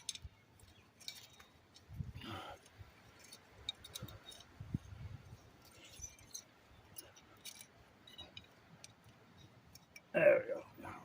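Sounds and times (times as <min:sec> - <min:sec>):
faint metallic clicks and clinks: 0:00.0 - 0:11.0.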